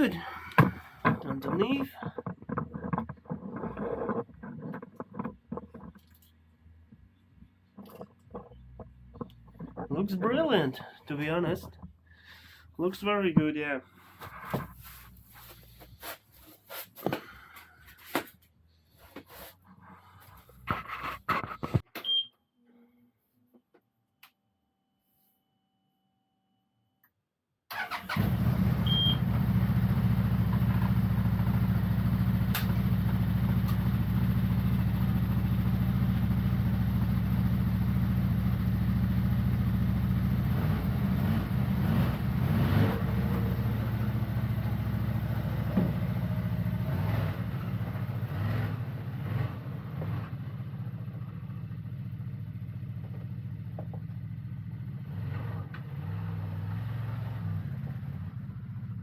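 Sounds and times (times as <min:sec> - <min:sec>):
atv engine starting and running: 0:00.0 - 0:06.3, 0:27.7 - 0:59.0.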